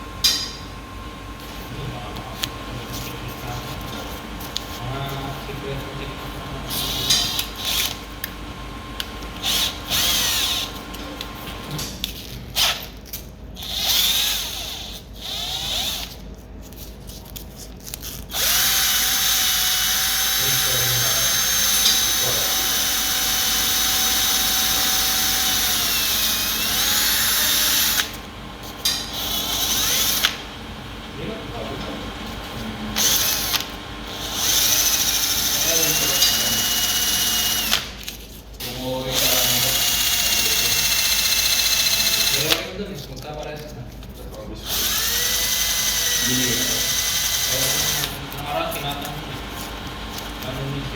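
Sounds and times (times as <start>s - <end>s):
small motor whining: 9.4s - 11.6s, 13.6s - 16.8s, 17.8s - 38.2s, 39.1s - 42.7s, 44.6s - 50.9s.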